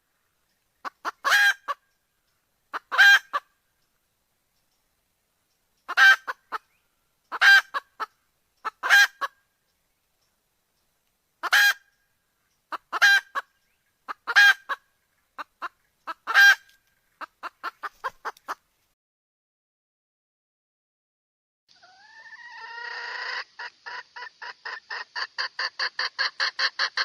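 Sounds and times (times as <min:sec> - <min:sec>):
hen calling: 0:00.8 - 0:03.6, 0:05.8 - 0:09.4, 0:11.4 - 0:18.6, 0:21.7 - 0:27.0.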